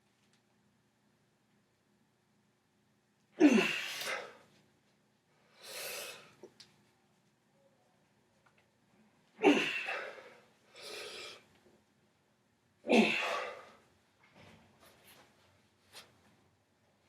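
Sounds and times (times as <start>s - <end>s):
man's forceful exhalations: 3.4s - 4.4s, 9.4s - 11.4s, 12.9s - 13.8s.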